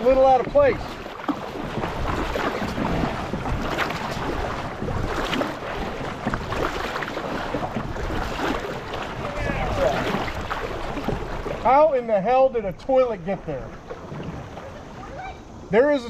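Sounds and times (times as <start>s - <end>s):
wind rumbling on microphone: 0.0s - 11.8s
water splashing around kayak: 0.0s - 16.0s.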